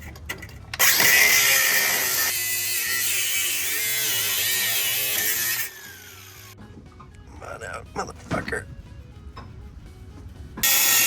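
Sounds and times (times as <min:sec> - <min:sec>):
angle grinder cutting metal: 0:00.8 - 0:06.6, 0:10.6 - 0:11.0.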